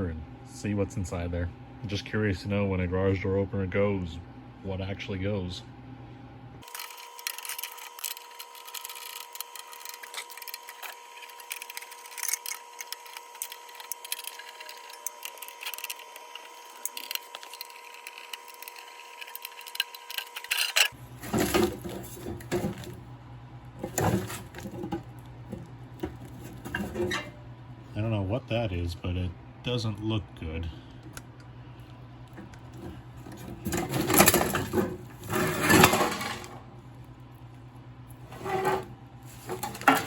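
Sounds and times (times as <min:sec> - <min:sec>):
plastic and metal parts clattering: 0:06.6 - 0:23.0, 0:23.8 - 0:27.3, 0:32.4 - 0:36.6, 0:38.3 - 0:40.0.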